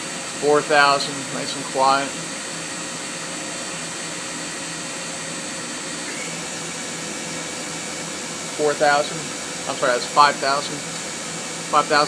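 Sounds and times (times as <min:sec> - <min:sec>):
machine spindle whirring: 0:00.0 - 0:12.0
faint higher whine: 0:05.1 - 0:07.1.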